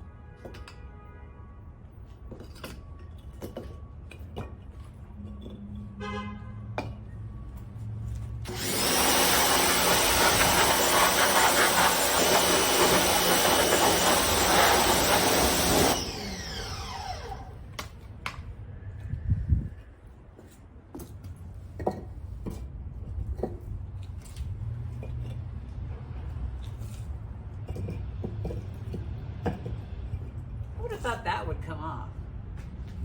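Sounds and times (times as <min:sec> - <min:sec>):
water jet hissing: 0:08.5 - 0:16.4
pressure washer motor whine: 0:08.5 - 0:17.6.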